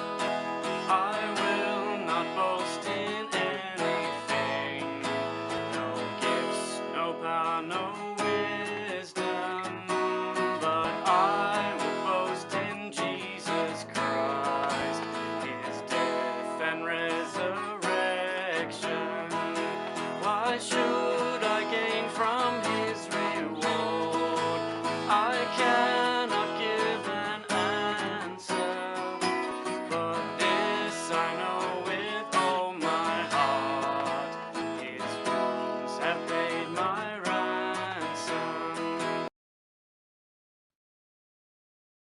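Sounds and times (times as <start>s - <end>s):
acoustic guitar music: 0.0s - 39.3s.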